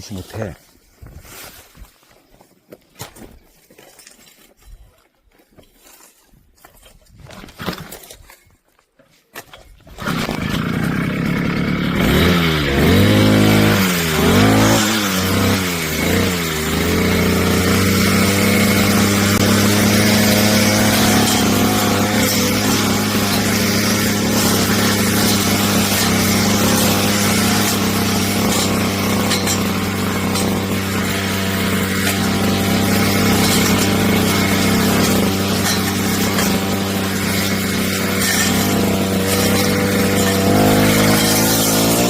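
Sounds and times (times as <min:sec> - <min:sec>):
brush cutter engine revving: 0:09.8 - 0:42.0.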